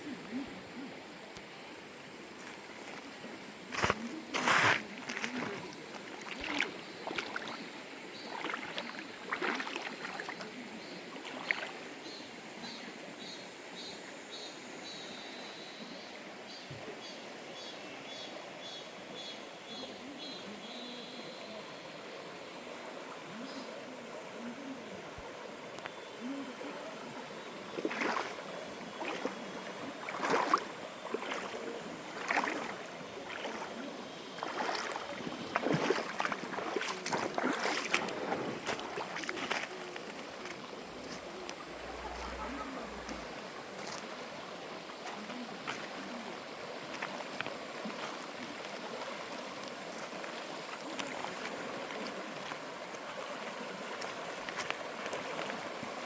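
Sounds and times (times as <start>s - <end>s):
stream flowing over rocks: 0.0s - 13.8s, 21.5s - 56.0s
sharp splashes: 3.8s - 7.6s, 8.2s - 10.5s, 27.8s - 44.0s.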